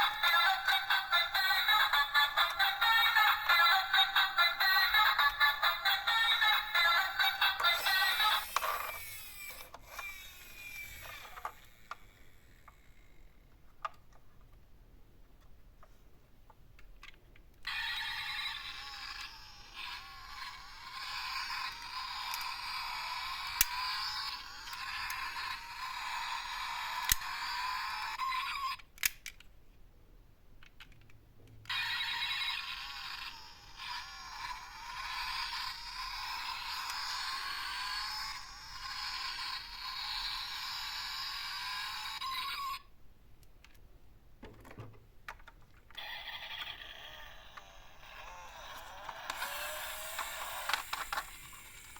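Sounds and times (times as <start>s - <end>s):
toy electronic siren tune: 0.0s - 12.2s, 17.7s - 28.8s, 31.7s - 42.8s, 46.0s - 51.9s
plastic toy cars clicking: 16.8s - 29.5s, 30.6s - 42.8s, 44.5s - 51.9s.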